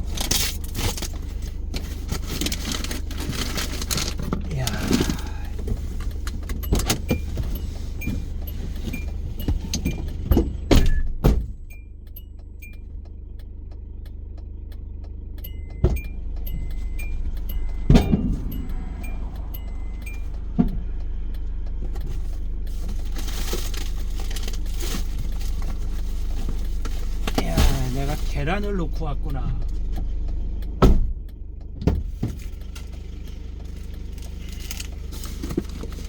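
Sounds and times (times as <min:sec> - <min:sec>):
car engine humming: 0:00.0 - 0:36.0
light electronic ticking: 0:11.6 - 0:22.8, 0:28.8 - 0:31.8
knocks and thumps: 0:15.7 - 0:20.8.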